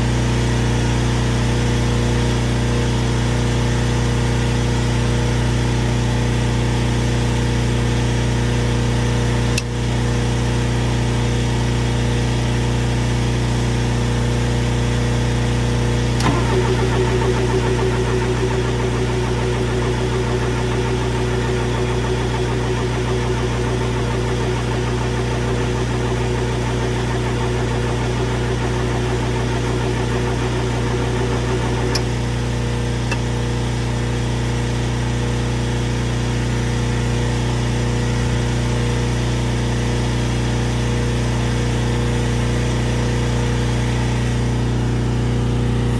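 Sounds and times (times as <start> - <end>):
click: 9.5 - 9.7, 16.2 - 24.6, 29.4 - 32.2, 33.1 - 33.3
engine idling: 15.5 - 35.0
high steady whine: 16.2 - 33.3.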